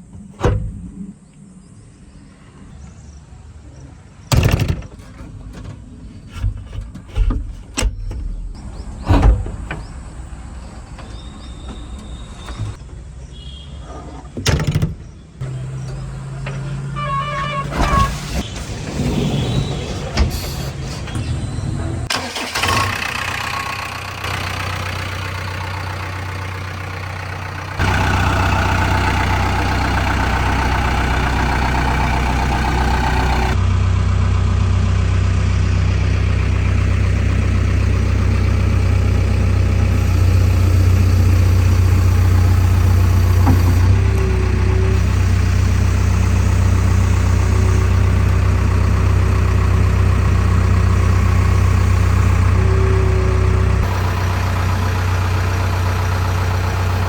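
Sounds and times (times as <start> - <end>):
heavy diesel engine running: 15.4 - 57.0.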